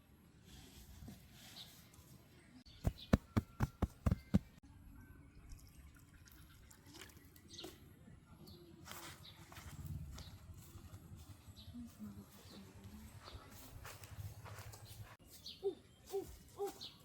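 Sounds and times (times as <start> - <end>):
sharp knocks: 2.8 - 4.5.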